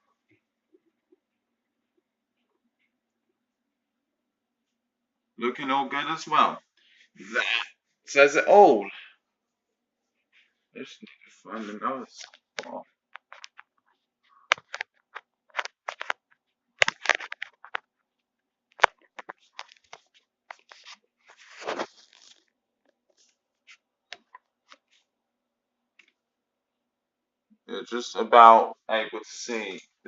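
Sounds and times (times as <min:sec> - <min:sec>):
plastic wrapper crackling and tearing: 0:14.5 - 0:17.9, 0:18.8 - 0:22.4.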